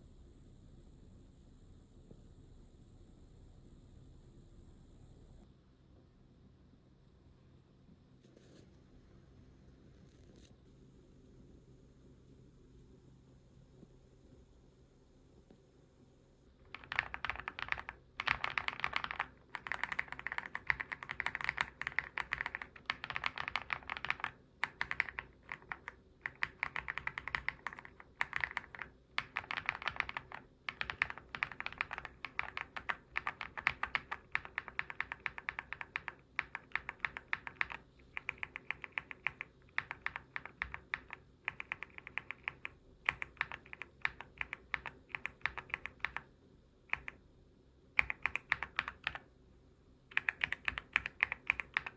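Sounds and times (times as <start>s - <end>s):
mechanical keyboard key clacks: 16.6s - 46.2s, 48.0s - 49.2s, 50.1s - 51.9s.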